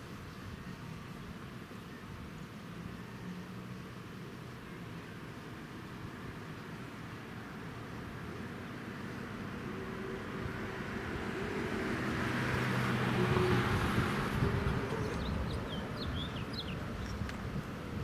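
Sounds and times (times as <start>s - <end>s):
vehicle passing by: 7.2s - 18.0s
bird chirps: 15.0s - 17.3s.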